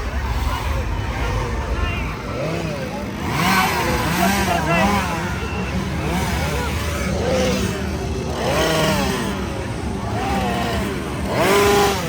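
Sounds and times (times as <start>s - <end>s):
chainsaw engines revving: 0.0s - 12.0s.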